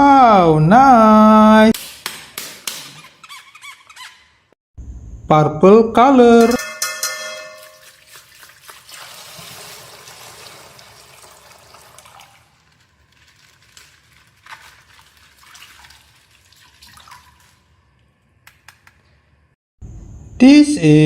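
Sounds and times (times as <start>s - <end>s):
plastic packaging crinkling: 12.3s - 15.4s.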